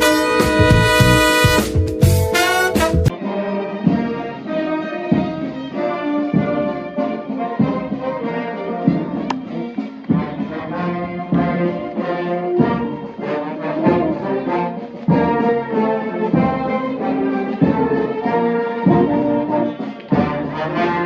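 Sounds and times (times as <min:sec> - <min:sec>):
low beat: 0:00.0 - 0:03.1
brass band playing: 0:00.0 - 0:21.0.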